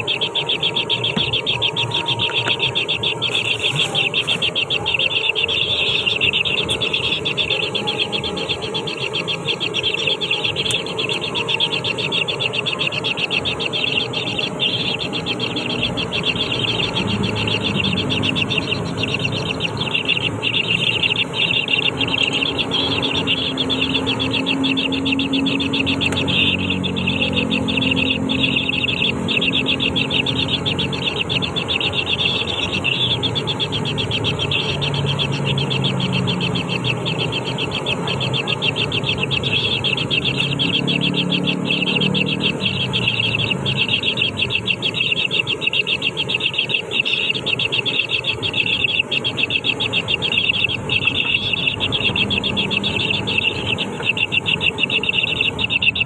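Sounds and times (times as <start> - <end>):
insects buzzing: 0.0 - 56.0.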